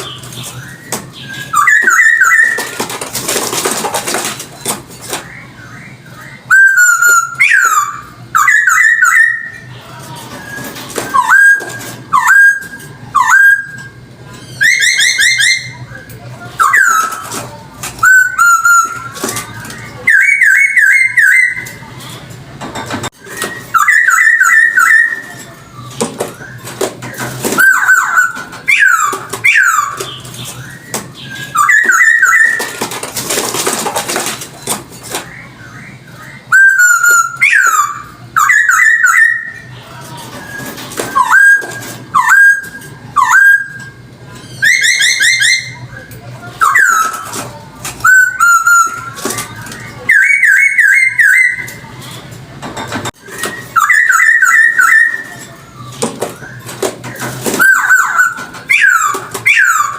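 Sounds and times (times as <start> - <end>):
bird singing whistled phrases: 0.0 - 2.8, 5.3 - 9.7, 19.8 - 21.8, 23.2 - 25.5, 27.6 - 32.8, 35.3 - 39.7, 49.8 - 51.8, 53.2 - 56.6, 57.6 - 59.9.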